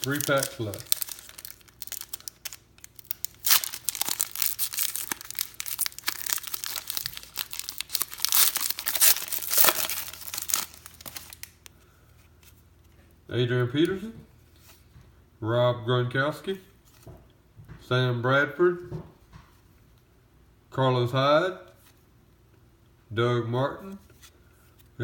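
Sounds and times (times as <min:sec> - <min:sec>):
wrapper tearing and crinkling: 0:00.0 - 0:11.7.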